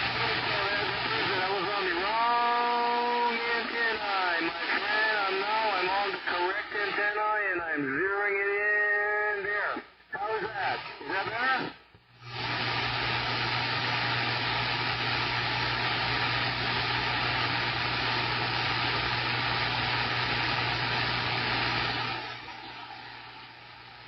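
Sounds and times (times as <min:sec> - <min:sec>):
radio static hiss: 0:00.0 - 0:24.0.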